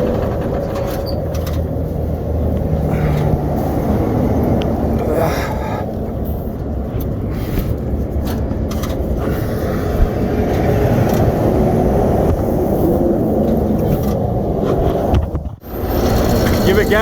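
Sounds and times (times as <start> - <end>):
truck diesel engine idling: 0.0 - 14.6.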